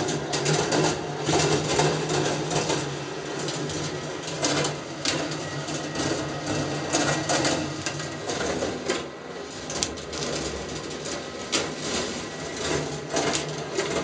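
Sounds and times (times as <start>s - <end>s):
marbles rolling on metal track: 6.6s - 14.0s.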